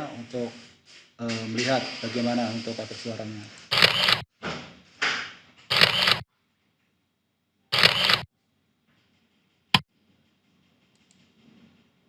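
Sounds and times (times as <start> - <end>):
camera shutter sound effect: 3.7 - 4.2, 5.7 - 6.2, 7.7 - 8.3.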